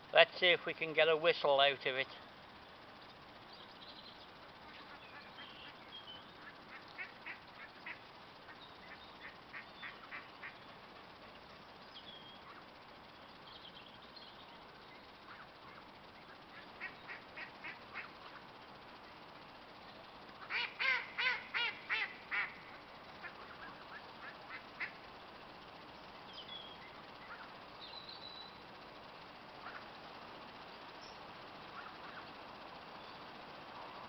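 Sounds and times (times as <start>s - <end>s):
kettle hissing: 0.0s - 25.0s.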